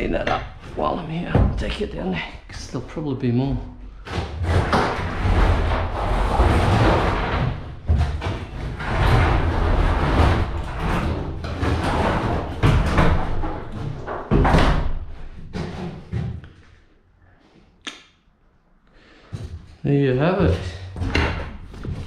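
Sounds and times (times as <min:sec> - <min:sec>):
scrap crashing and thudding: 0:04.0 - 0:16.4.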